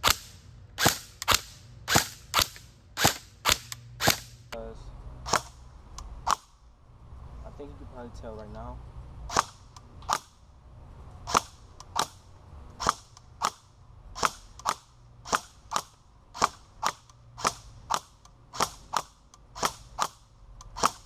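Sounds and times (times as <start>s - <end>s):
airsoft rifle shots hitting wood: 0.0s - 4.4s, 5.2s - 5.6s, 9.3s - 10.4s, 11.2s - 12.2s, 12.8s - 21.0s.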